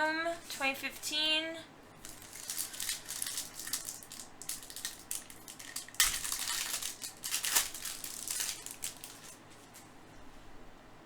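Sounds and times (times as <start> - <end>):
wrapper crinkling: 2.0 - 9.9.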